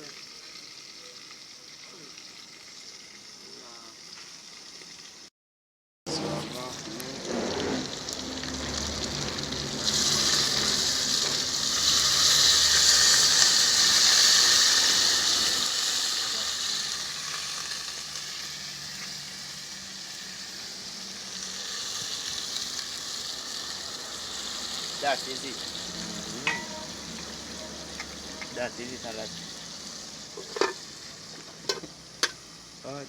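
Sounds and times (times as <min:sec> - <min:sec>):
dumplings sizzling in hot oil: 0:00.0 - 0:05.3, 0:06.4 - 0:33.0.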